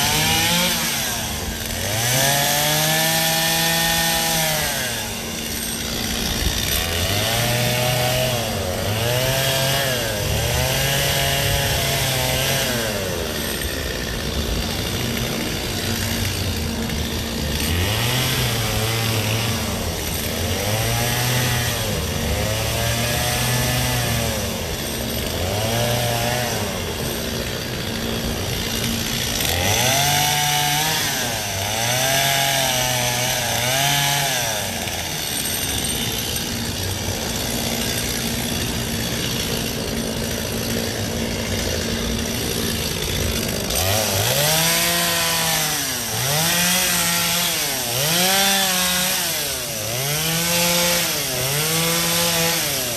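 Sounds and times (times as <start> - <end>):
chainsaw cutting ice: 0.0 - 52.9.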